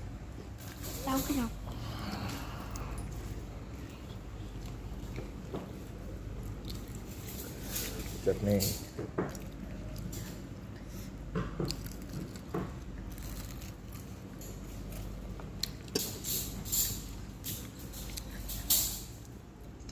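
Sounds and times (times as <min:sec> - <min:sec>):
steady low hum: 0:00.0 - 0:19.9
eating bites and squishes: 0:11.6 - 0:16.2.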